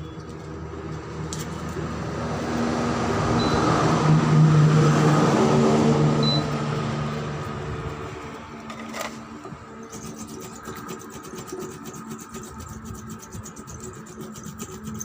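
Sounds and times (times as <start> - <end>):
vehicle engine passing by: 0.5 - 9.4.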